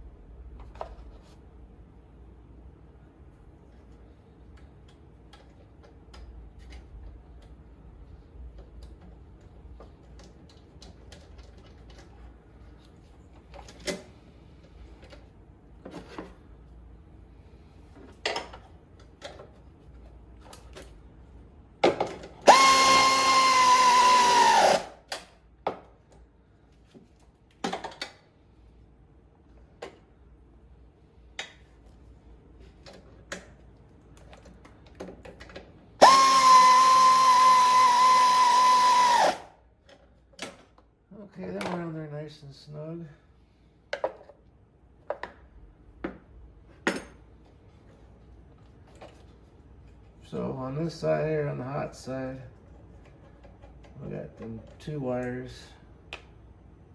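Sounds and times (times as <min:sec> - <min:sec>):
power drill whining: 0:22.5 - 0:25.0, 0:36.0 - 0:39.5.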